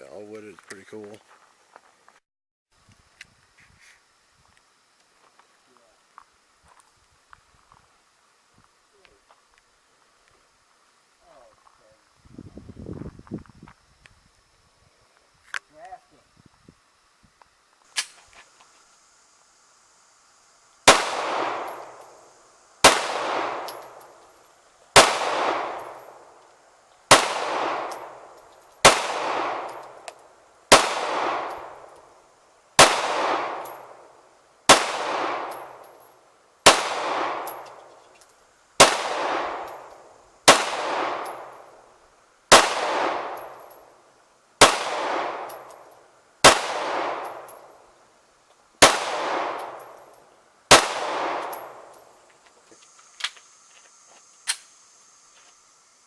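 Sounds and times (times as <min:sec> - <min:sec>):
gunshots with ringing tail: 0:20.8 - 0:22.2, 0:22.8 - 0:24.2, 0:25.0 - 0:26.3, 0:27.1 - 0:30.0, 0:30.7 - 0:31.9, 0:32.8 - 0:34.0, 0:34.7 - 0:35.9, 0:36.6 - 0:37.7, 0:38.8 - 0:41.7, 0:42.5 - 0:43.7, 0:44.6 - 0:45.7, 0:46.4 - 0:47.7, 0:48.8 - 0:50.0, 0:50.7 - 0:51.9.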